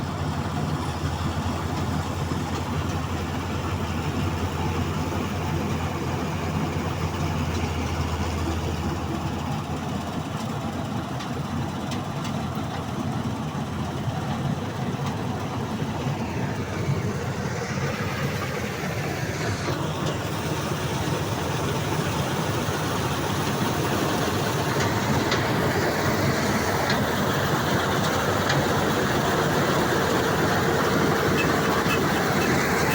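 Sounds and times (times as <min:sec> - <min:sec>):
diesel engine running: 0:00.0 - 0:32.9
machinery noise: 0:15.6 - 0:32.9.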